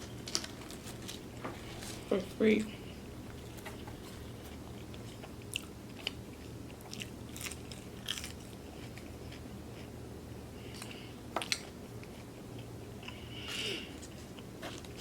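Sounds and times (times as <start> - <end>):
chewing and biting food: 3.3 - 10.0, 10.6 - 13.3, 13.9 - 15.0.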